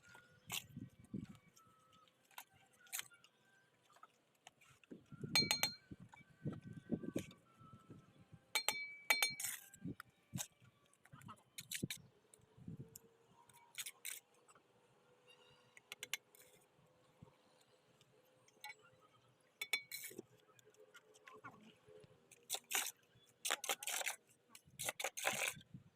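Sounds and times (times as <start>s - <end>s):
steel trowel knocking on bricks: 5.4s - 5.8s, 8.6s - 9.6s.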